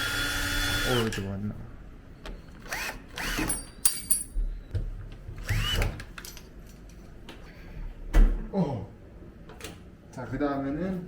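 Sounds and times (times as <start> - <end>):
power drill motor whine: 0.0 - 1.1, 2.6 - 3.6, 5.4 - 6.0.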